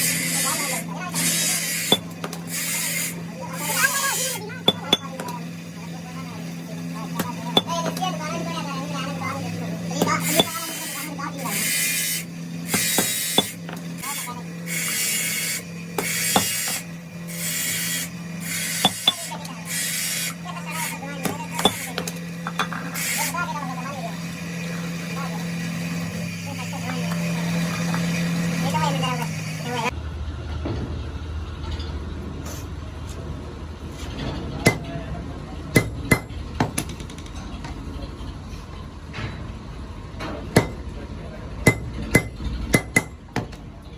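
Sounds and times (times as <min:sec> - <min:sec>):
abrasive rasping on metal: 0:00.0 - 0:29.9, 0:34.0 - 0:35.0, 0:35.8 - 0:36.8, 0:40.6 - 0:40.9, 0:41.7 - 0:43.6
hammer striking metal: 0:01.8 - 0:02.4, 0:04.6 - 0:05.3, 0:12.7 - 0:14.2, 0:16.0 - 0:16.9, 0:17.5 - 0:19.3, 0:34.7 - 0:34.9, 0:35.8 - 0:37.4, 0:40.6 - 0:40.9, 0:41.7 - 0:43.7
steady low hum: 0:32.9 - 0:43.9.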